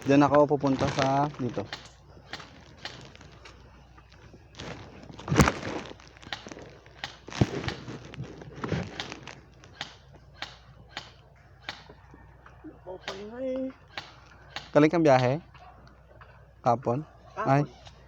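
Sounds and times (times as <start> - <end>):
clothing and gear rustling: 0.0 - 10.1
footsteps: 0.0 - 10.7.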